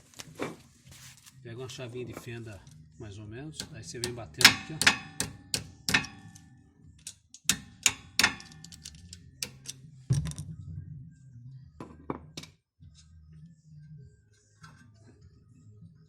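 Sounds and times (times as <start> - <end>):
screwdriver tapping metal: 3.6 - 9.8
low steady hum: 7.7 - 11.5.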